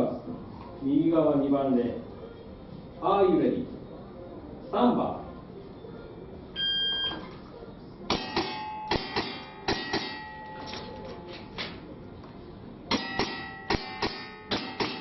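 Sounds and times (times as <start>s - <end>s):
metallic ringing: 8.1s - 11.4s, 12.9s - 15.0s.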